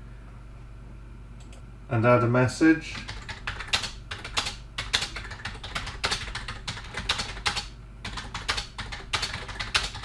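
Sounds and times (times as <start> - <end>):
typing on computer keyboard: 3.0 - 10.0.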